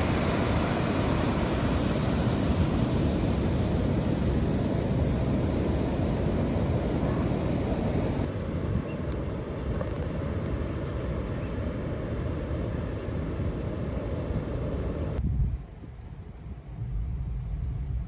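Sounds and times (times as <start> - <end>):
surf: 0.0 - 10.6
rumbling wind: 0.0 - 18.0
wind buffeting microphone: 0.0 - 18.0.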